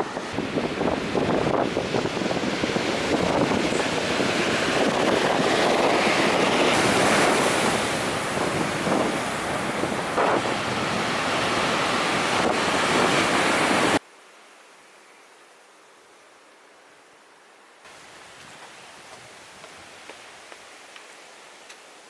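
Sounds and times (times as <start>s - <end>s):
ocean surf breaking: 0.0s - 14.0s
wind buffeting microphone: 0.0s - 14.0s
faint hiss: 14.0s - 22.0s.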